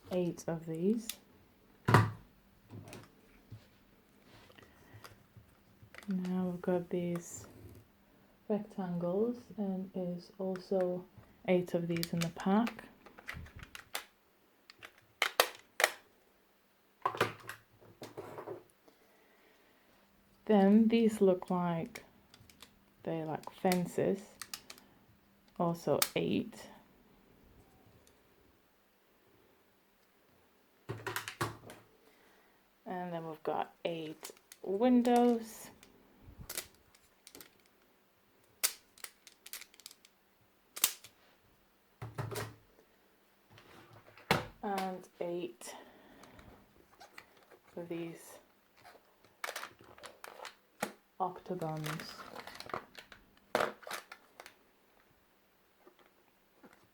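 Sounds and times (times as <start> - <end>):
plastic tiles clacking: 23.3 - 24.8, 34.1 - 35.5, 36.5 - 37.7, 38.6 - 40.2, 49.2 - 50.6, 51.5 - 54.6
plastic tiles clicking and clacking: 36.5 - 37.7, 38.6 - 40.1.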